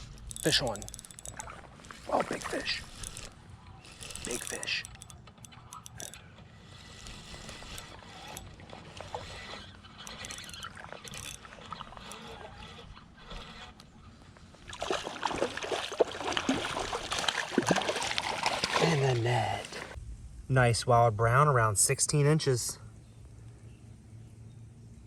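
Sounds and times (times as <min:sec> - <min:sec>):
water splashing: 0:00.0 - 0:03.5, 0:14.5 - 0:20.0
fishing reel ratcheting clicks: 0:00.0 - 0:13.9.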